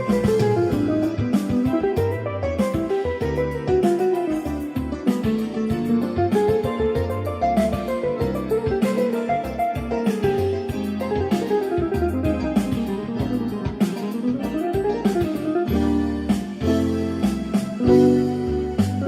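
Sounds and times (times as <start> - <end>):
keyboard demo song: 0.0 - 19.0.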